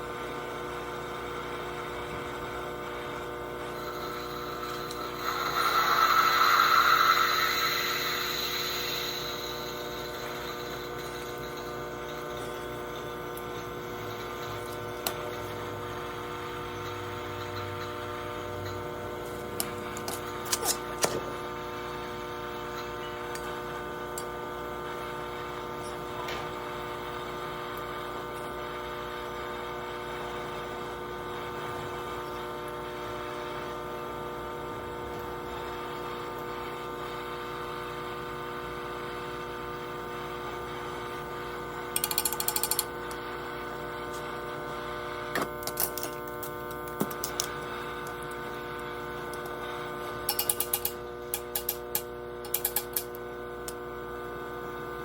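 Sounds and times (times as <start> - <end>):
machine hum: 1.0 - 29.5.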